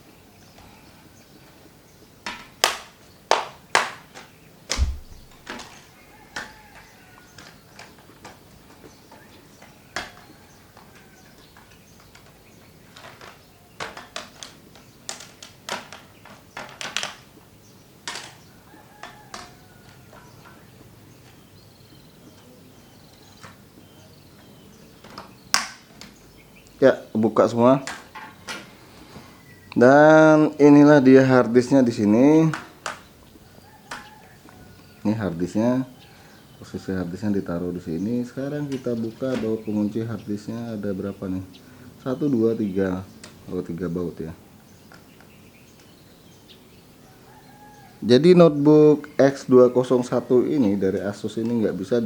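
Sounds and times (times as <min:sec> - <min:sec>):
dull knock: 0:04.7 - 0:05.7
plastic clips clicking loose: 0:25.0 - 0:26.8, 0:32.4 - 0:33.1.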